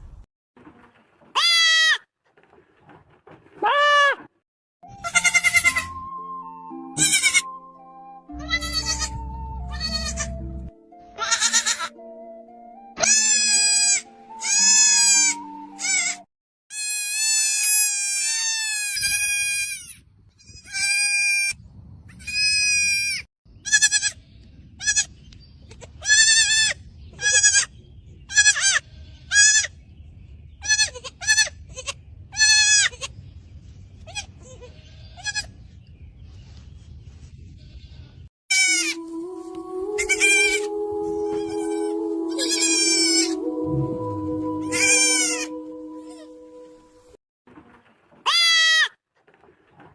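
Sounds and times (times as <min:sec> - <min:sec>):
music with held notes: 0:04.8 - 0:16.2, 0:38.7 - 0:47.2
goat kids bleating: 0:04.9 - 0:05.9, 0:07.0 - 0:07.5, 0:08.4 - 0:10.4, 0:11.2 - 0:12.0, 0:13.0 - 0:21.5, 0:22.2 - 0:24.2, 0:24.8 - 0:25.1, 0:25.8 - 0:27.7, 0:28.3 - 0:29.7, 0:30.6 - 0:33.1, 0:34.0 - 0:35.6, 0:37.6 - 0:39.2, 0:40.0 - 0:43.4, 0:44.6 - 0:46.3.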